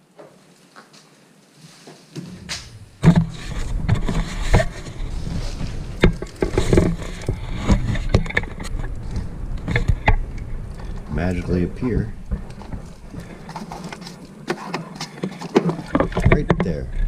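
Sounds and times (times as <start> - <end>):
low rumble: 2.6 - 14.4
plastic parts knocking and clicking: 12.3 - 16.8.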